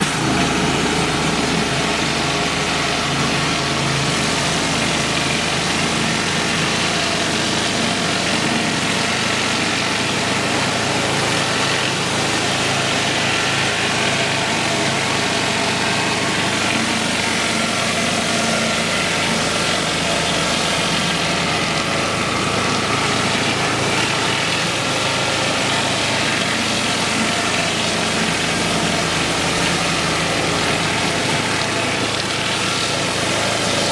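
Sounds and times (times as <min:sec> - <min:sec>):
high-pressure water spraying: 0:00.0 - 0:33.9
pressure washer engine running: 0:00.0 - 0:33.9.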